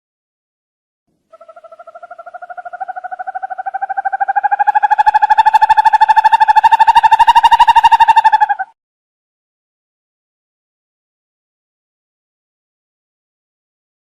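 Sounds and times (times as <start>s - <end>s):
owl trilling: 1.3s - 8.8s.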